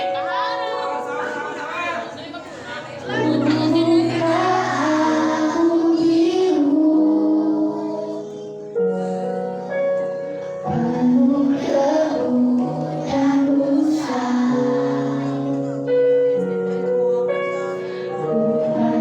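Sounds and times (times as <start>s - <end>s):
person singing: 3.1s - 9.1s, 10.7s - 15.9s, 18.0s - 19.0s.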